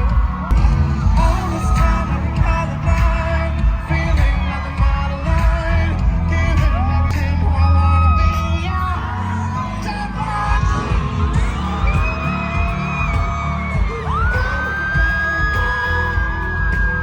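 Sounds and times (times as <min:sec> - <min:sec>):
heavy bass beat: 0:00.0 - 0:17.0
pop music with singing: 0:00.0 - 0:17.0.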